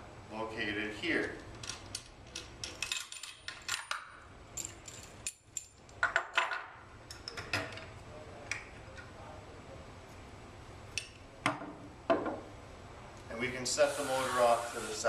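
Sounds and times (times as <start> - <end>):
metal clinks and clanks: 1.6 - 5.8.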